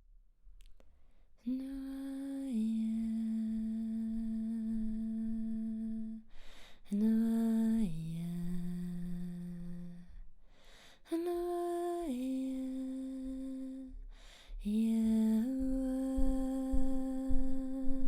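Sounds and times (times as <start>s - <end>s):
woman humming: 14.6s - 18.0s.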